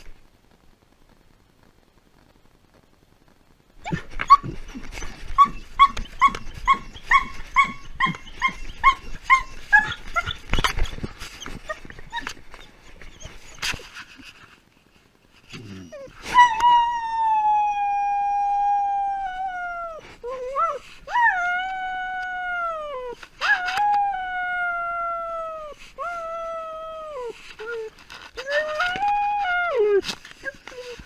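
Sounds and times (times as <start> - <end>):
dog howling: 15.8 - 30.0.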